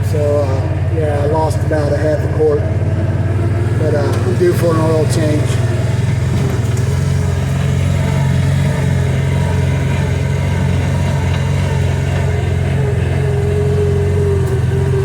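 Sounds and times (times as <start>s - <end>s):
high steady whine: 0.0s - 10.2s
engine running with loud hum: 0.0s - 15.0s.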